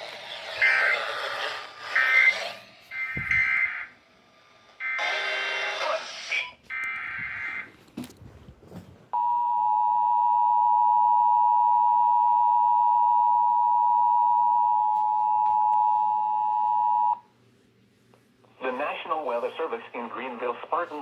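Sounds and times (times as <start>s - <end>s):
emergency alert tone: 2.9s - 3.9s, 4.8s - 5.5s.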